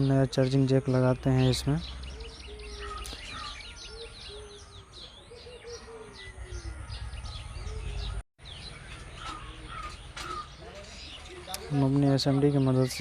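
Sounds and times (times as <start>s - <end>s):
small birds chirping: 0.0s - 13.0s
bird cooing: 2.0s - 8.2s.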